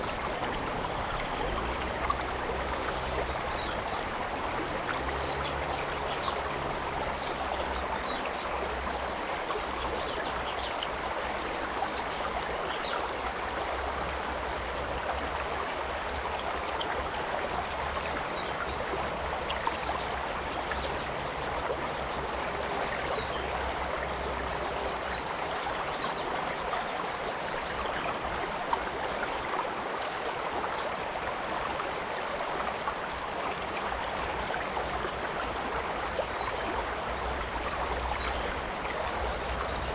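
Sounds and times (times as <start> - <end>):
stream flowing over rocks: 0.0 - 39.9.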